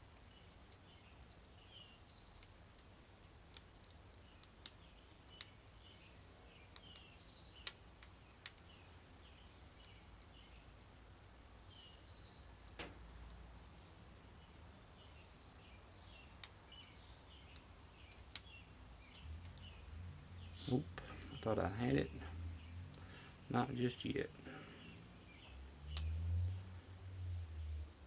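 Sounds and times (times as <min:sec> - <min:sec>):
faint bird chirps: 0:04.2 - 0:11.0.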